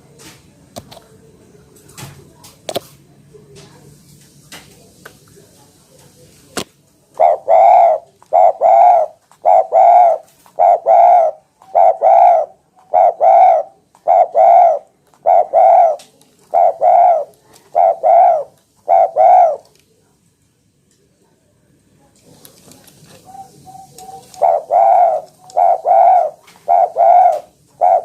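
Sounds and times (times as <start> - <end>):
dove cooing: 7.1 - 19.7, 23.0 - 28.0.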